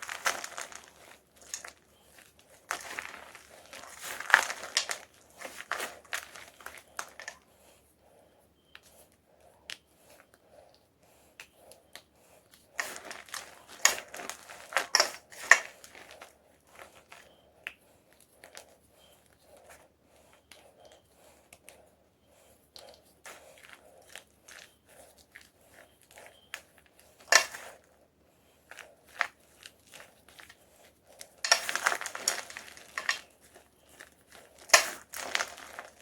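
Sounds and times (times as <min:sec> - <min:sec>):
chalk crunching: 0:00.0 - 0:07.7, 0:28.6 - 0:36.0.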